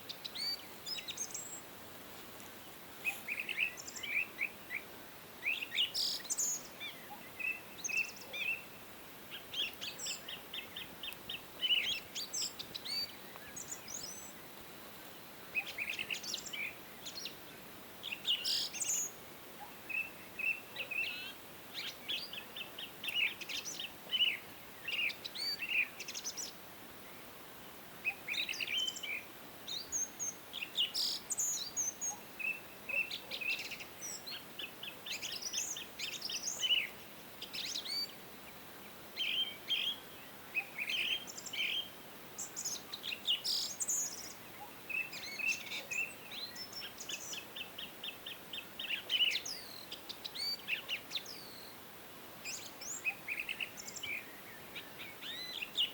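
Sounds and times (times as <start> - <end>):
faint background hiss: 0.0 - 55.9.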